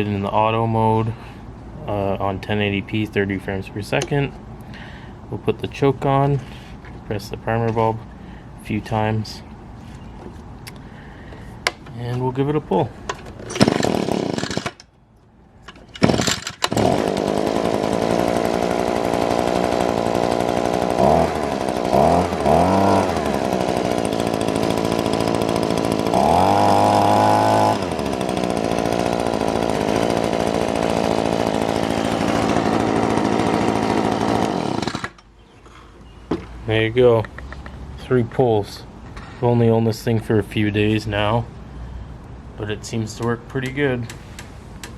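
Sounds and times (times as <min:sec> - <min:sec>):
pull cord starting: 0:13.1 - 0:14.9, 0:15.6 - 0:35.3
leaf blower engine running: 0:13.5 - 0:14.8, 0:16.0 - 0:35.2.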